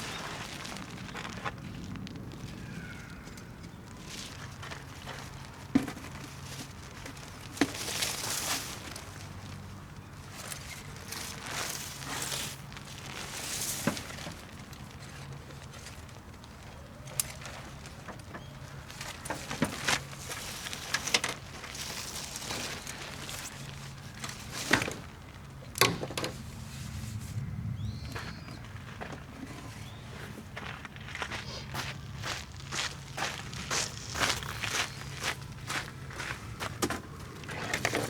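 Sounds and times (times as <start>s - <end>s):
camping gear clicks and knocks: 10.0s - 26.4s, 36.7s - 38.0s.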